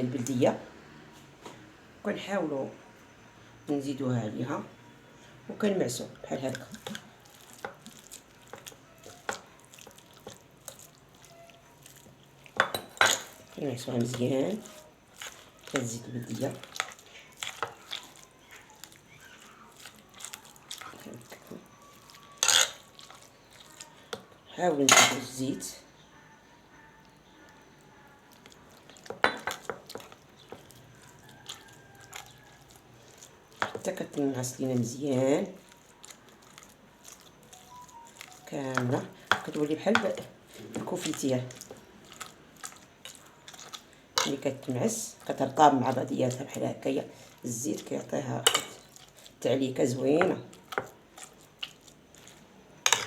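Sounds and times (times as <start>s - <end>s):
fork clinking against dish: 22.3s - 22.8s.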